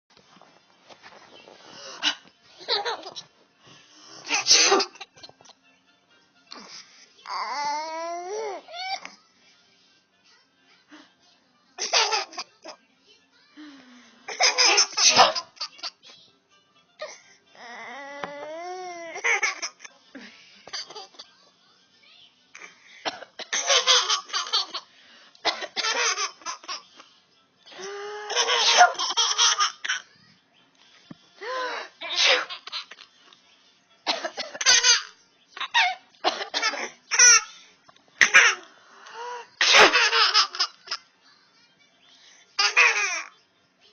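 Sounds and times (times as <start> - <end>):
baby laughing: 2.0 - 3.3, 11.8 - 12.8, 14.3 - 16.1, 19.0 - 19.9, 23.5 - 24.9, 25.5 - 26.9, 28.1 - 30.1, 39.7 - 41.0, 42.6 - 43.3.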